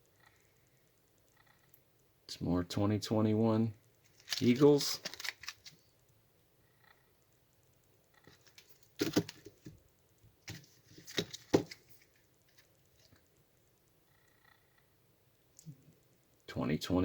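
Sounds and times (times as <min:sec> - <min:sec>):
coins and packaging clicking: 0:04.0 - 0:05.8.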